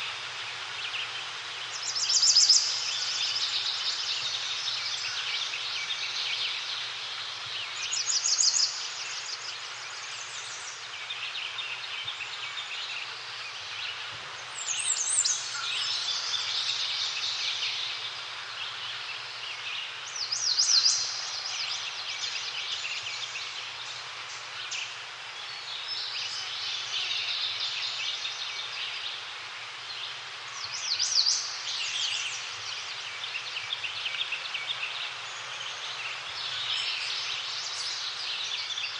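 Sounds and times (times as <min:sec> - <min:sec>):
background hiss: 0:00.0 - 0:38.9
forest birds chirping: 0:00.0 - 0:38.9.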